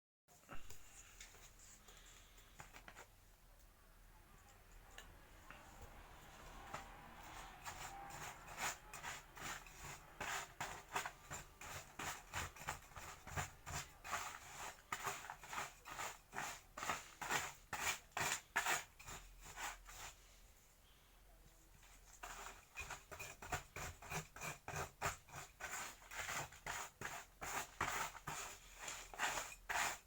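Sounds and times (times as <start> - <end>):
short scraping strokes: 5.6 - 20.2.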